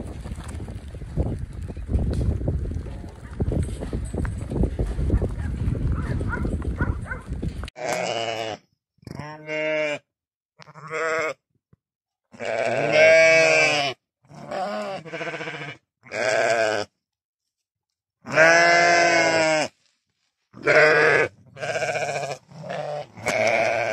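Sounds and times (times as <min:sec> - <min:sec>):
livestock bleating: 0:07.8 - 0:11.4, 0:12.3 - 0:16.9, 0:18.2 - 0:19.8, 0:20.6 - 0:23.9.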